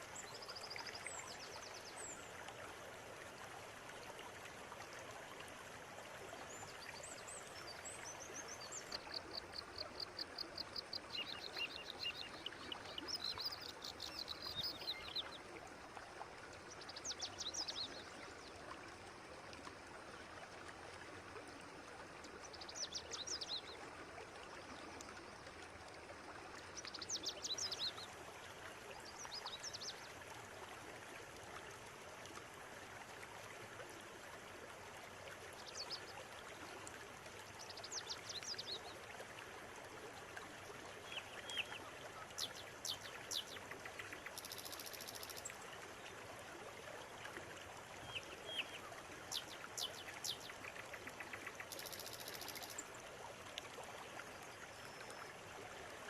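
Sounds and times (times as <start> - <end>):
river water running: 0.0 - 56.0.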